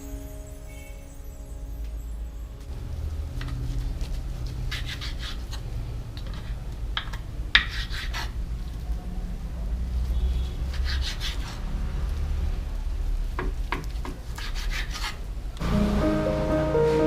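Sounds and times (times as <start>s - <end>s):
utensil scraping in a pan: 3.8s - 6.7s, 7.6s - 8.4s.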